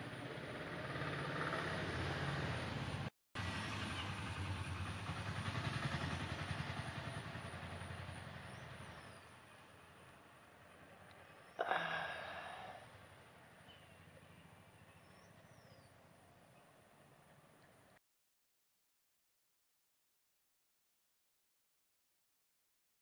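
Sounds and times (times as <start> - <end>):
vehicle engine passing: 0.0 - 11.0.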